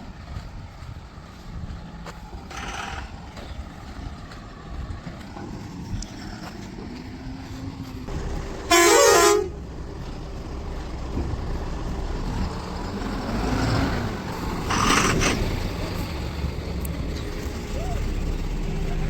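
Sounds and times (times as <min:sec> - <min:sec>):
diesel engine rumbling: 0:00.0 - 0:19.0
vehicle horn blast: 0:08.7 - 0:09.6.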